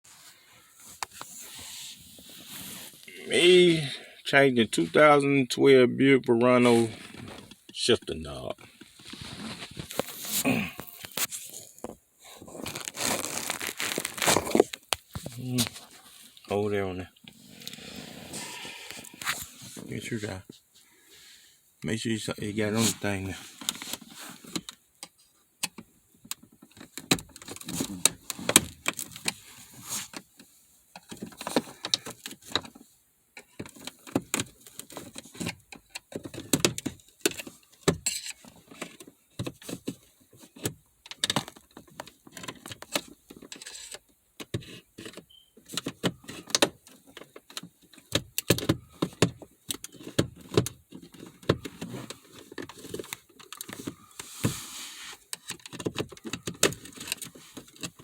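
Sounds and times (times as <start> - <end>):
gear shifter clicking and rattling: 23.6 - 54.3, 55.2 - 58.0.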